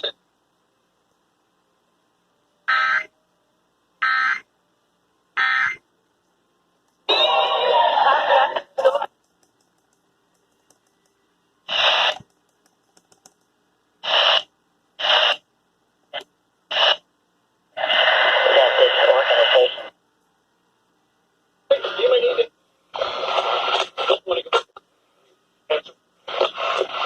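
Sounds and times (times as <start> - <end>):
radio bursts: 11.7 - 12.2, 14.0 - 15.4, 21.7 - 24.8, 25.7 - 27.0.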